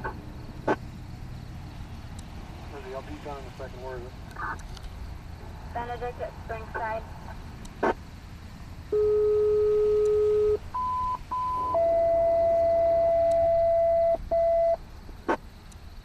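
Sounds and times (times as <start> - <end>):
long steady paging tone: 8.9 - 14.8
short high beeps: 9.0 - 14.8.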